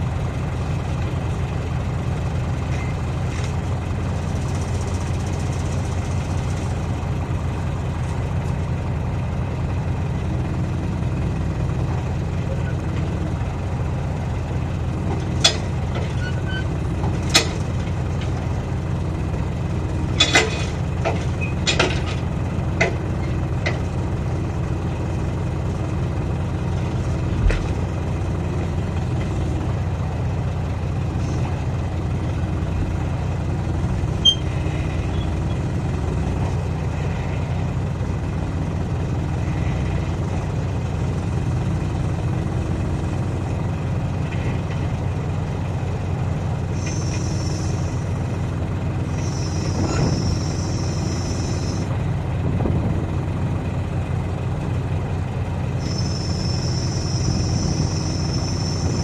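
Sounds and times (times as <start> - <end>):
heavy engine idling: 0.0 - 59.0
metallic clanks and knocks: 15.1 - 16.4, 17.0 - 18.4, 20.2 - 23.8.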